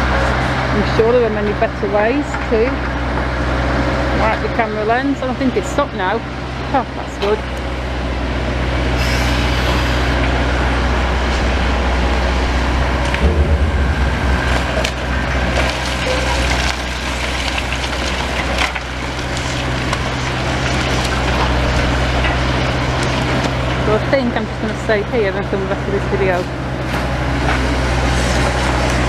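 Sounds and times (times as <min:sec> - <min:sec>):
excavator engine running: 0:00.0 - 0:29.0
timber and rubble cracking: 0:13.0 - 0:23.8.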